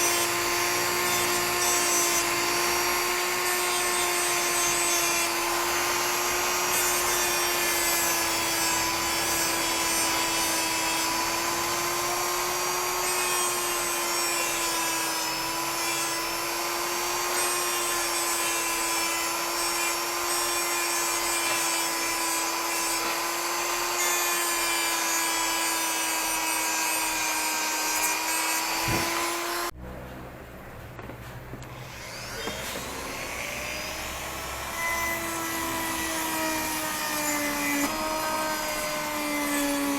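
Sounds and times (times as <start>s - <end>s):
electric power tool whining: 0.0s - 29.8s, 31.7s - 39.9s
low rumbling noise: 29.7s - 32.2s.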